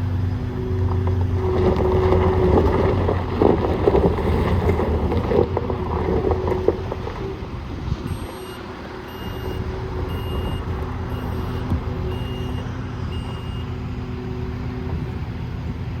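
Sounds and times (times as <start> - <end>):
diesel engine running: 0.0 - 16.0
backup alarm beeping: 8.0 - 13.8.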